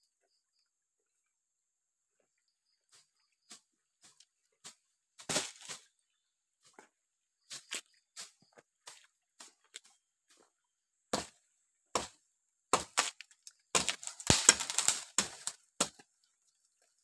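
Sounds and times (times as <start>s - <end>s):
sharp cracks and knocks: 5.2s - 5.8s, 12.0s - 16.0s.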